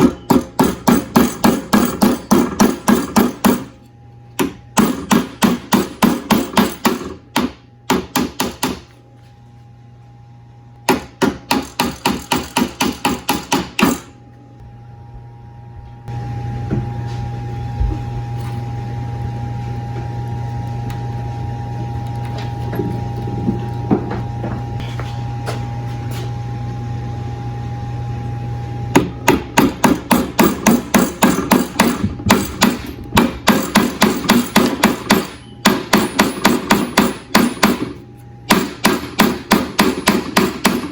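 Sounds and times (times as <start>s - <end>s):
steady hum with whine: 0.0s - 40.9s
rapid hammer blows: 10.9s - 14.1s, 28.9s - 40.9s.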